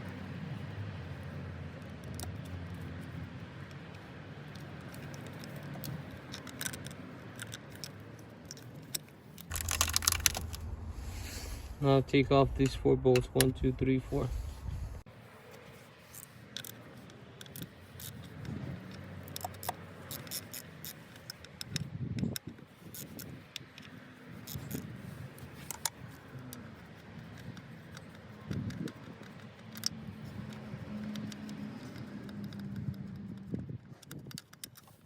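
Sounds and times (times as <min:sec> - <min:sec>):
metal clinks and scrapes: 0:08.6 - 0:11.6
wrench clicking: 0:17.4 - 0:23.4, 0:27.4 - 0:35.0.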